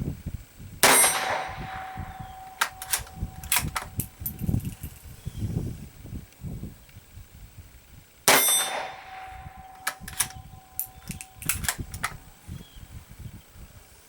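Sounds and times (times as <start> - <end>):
rifle shot: 0.8 - 4.1, 8.3 - 12.2
ringing metallic tone: 0.8 - 5.0, 8.3 - 12.1
rifle bolt clicks: 2.4 - 4.4, 9.7 - 12.2.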